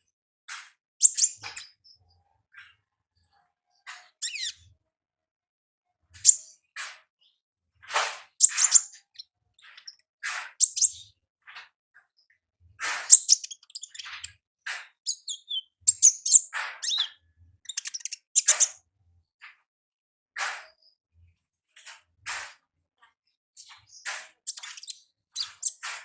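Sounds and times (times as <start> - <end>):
bird chirping: 1.0 - 2.0, 4.2 - 4.6, 8.4 - 10.0, 10.6 - 11.1, 13.1 - 14.4, 15.1 - 18.7, 23.6 - 25.9.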